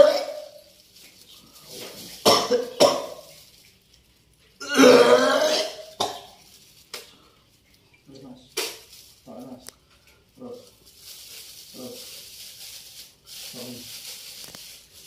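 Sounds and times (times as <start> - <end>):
person coughing hard: 2.2 - 3.2, 4.6 - 6.3
person belching: 4.6 - 6.2.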